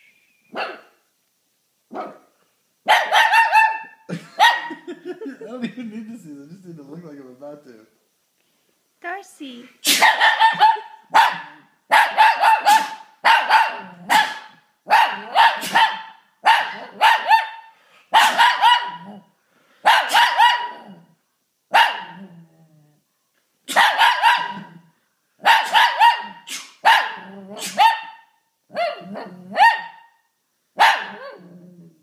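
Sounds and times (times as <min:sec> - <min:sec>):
dog barking: 0:00.5 - 0:01.0, 0:01.9 - 0:04.9, 0:09.8 - 0:20.9, 0:21.7 - 0:22.2, 0:23.7 - 0:30.2, 0:30.8 - 0:31.5.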